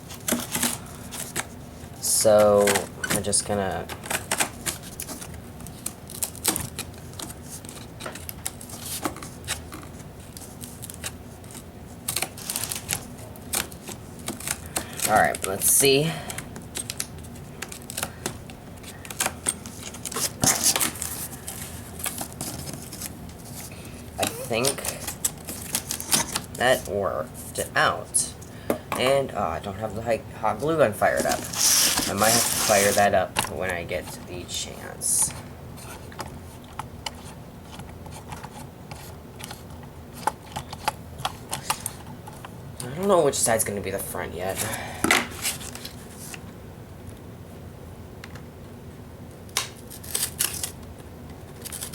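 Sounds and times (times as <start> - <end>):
cardboard scraping rustle: 31.0 - 33.2.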